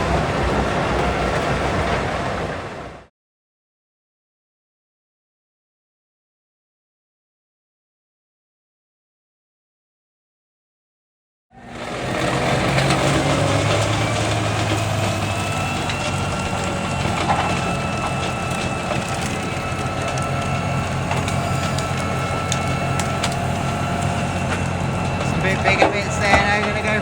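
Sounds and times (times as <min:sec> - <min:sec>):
wood chipper engine: 0:00.0 - 0:03.1, 0:11.5 - 0:27.0
wood crackling and splintering: 0:11.6 - 0:27.0.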